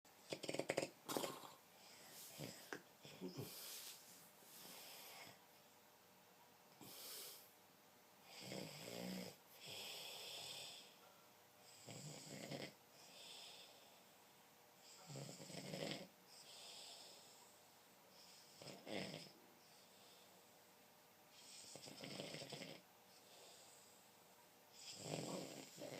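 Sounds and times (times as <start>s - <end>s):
person snoring: 0.3s - 3.9s, 15.0s - 17.2s, 21.4s - 22.8s, 24.8s - 25.9s.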